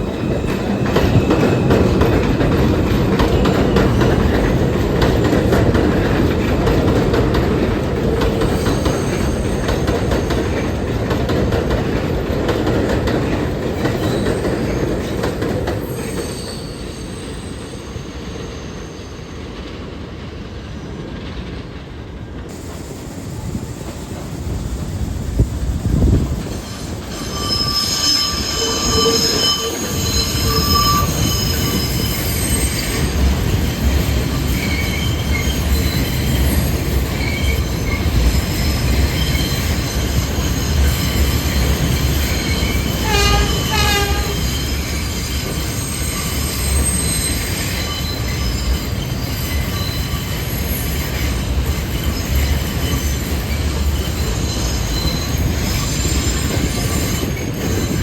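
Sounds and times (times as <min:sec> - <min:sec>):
train wheels squealing: 0:00.0 - 0:21.6, 0:22.5 - 0:58.0
train wheels rumbling on rail: 0:00.0 - 0:58.0.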